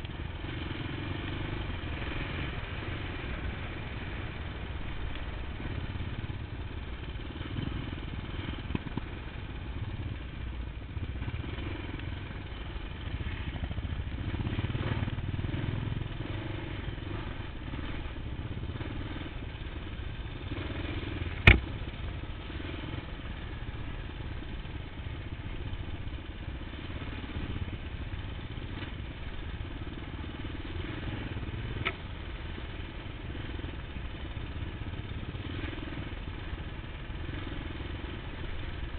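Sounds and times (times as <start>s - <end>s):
motorcycle engine revving: 0.0s - 38.9s
sharp knock: 21.4s - 21.7s.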